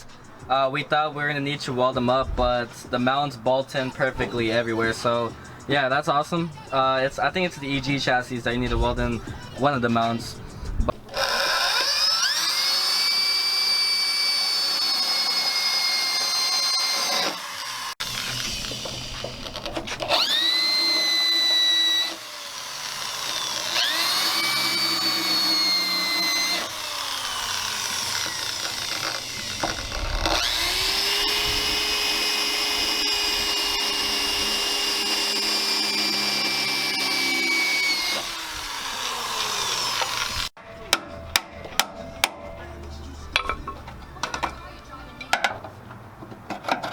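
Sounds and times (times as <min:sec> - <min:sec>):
rotary power tool on sheet metal: 0:11.1 - 0:40.6.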